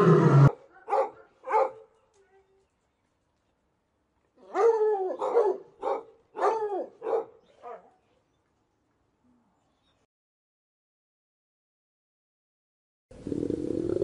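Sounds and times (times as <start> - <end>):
dog barking: 0.5 - 1.9, 4.4 - 8.0.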